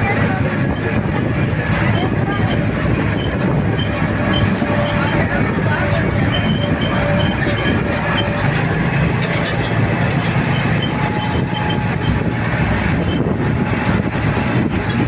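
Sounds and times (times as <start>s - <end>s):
car engine and road noise: 0.0s - 15.0s
constant low hum: 0.0s - 15.0s.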